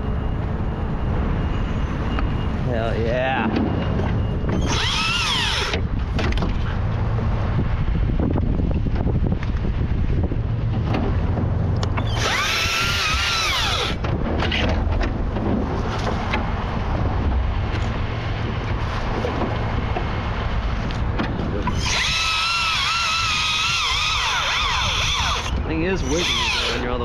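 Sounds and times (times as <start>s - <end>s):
low rumble: 0.0s - 22.7s
wind noise: 0.0s - 27.0s
electric chainsaw whine: 4.5s - 5.9s, 11.8s - 14.0s, 21.5s - 27.0s.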